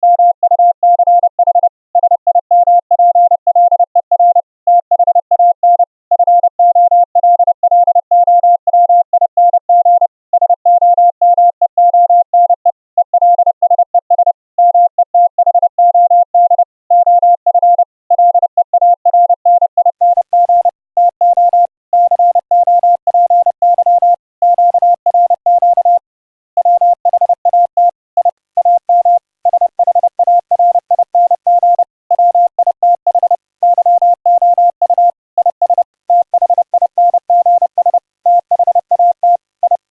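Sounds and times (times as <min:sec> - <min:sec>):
morse code tone: 0:19.2 - 0:39.9.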